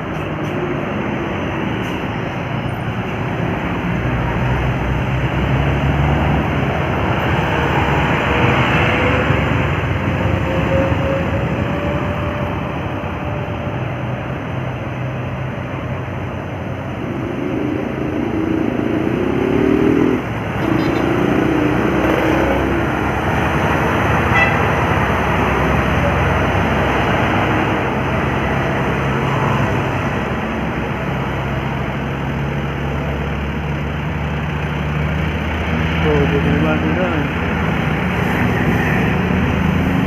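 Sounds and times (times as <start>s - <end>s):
heavy engines running: 0.0s - 40.0s
multi-tone vehicle horn: 24.3s - 24.8s.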